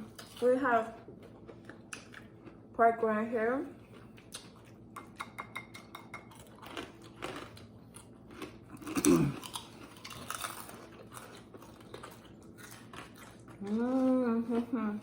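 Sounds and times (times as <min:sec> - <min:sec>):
eating sounds: 0:03.8 - 0:15.0.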